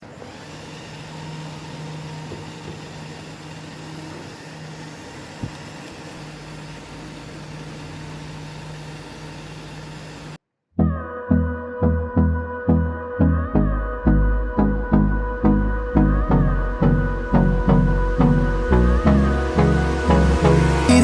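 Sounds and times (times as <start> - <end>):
mini fan humming: 0.0 - 10.4, 14.9 - 21.0.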